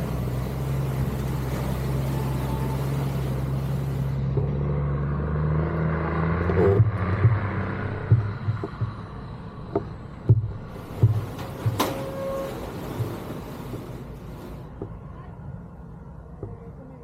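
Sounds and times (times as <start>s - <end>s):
irregular thumps: 6.6s - 12.1s.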